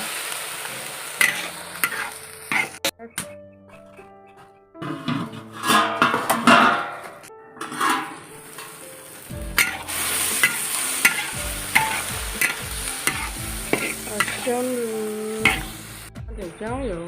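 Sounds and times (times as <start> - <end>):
food sizzling in a wok: 0.0 - 2.9, 7.6 - 16.1
metal spatula scraping a wok: 1.2 - 2.8, 4.8 - 16.0.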